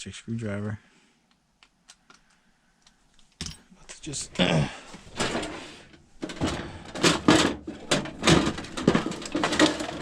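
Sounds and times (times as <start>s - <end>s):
clatter of objects being handled: 4.9s - 10.0s.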